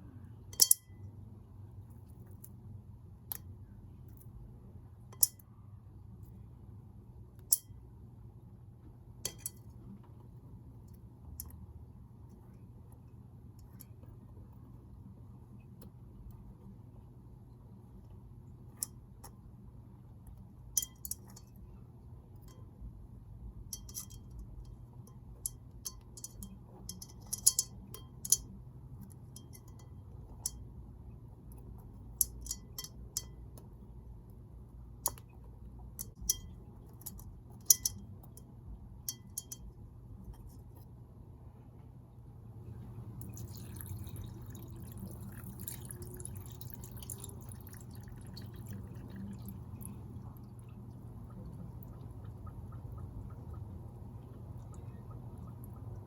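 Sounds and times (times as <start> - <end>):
clinks and taps on glass: 23.7 - 28.6, 39.0 - 39.8
water trickling and splashing: 43.2 - 53.6.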